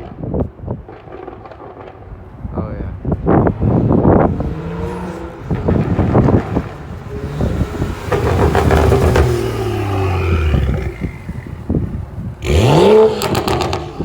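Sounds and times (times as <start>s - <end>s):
exhaust crackling and popping: 0.0s - 14.0s
car engine revving: 2.9s - 14.0s.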